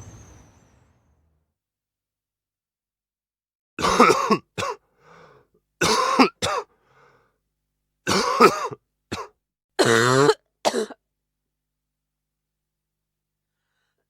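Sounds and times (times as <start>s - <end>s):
man coughing: 3.8s - 4.8s, 5.8s - 6.7s, 8.1s - 11.0s
faint breaths: 4.9s - 5.6s, 6.7s - 7.4s.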